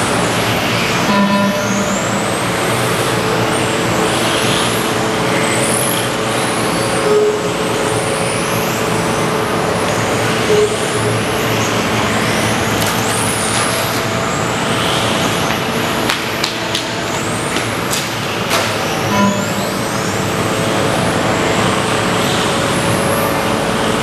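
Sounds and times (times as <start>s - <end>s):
noisy background: 0.0s - 24.0s
short beeps: 1.1s - 2.1s, 7.0s - 7.6s, 10.4s - 11.0s, 19.1s - 19.7s.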